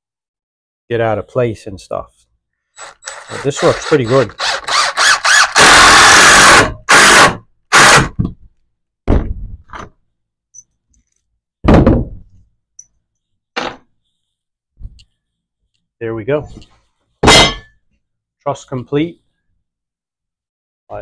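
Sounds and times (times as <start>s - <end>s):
power drill driving screws: 2.8s - 8.1s.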